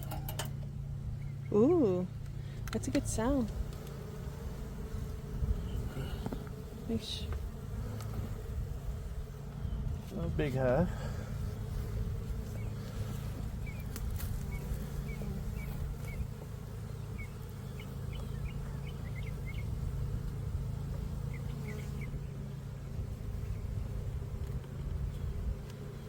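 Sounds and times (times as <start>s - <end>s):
bees buzzing: 0.9s - 26.0s
small birds chirping: 1.1s - 4.1s, 9.1s - 26.0s.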